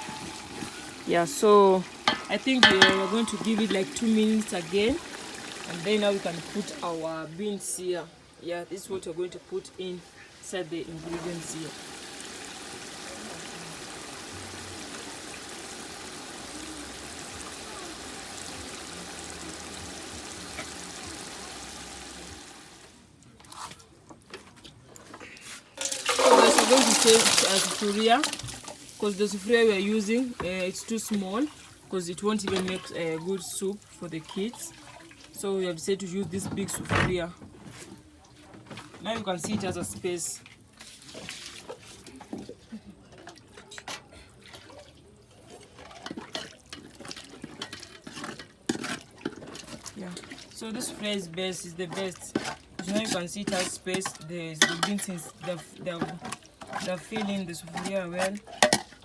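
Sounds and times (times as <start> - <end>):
stew pot hissing: 0.0 - 7.8, 9.2 - 23.0, 25.8 - 31.9
beans sloshing into metal pot: 1.8 - 5.1, 23.3 - 31.8
utensils knocking and clinking: 2.1 - 4.3, 25.8 - 27.7.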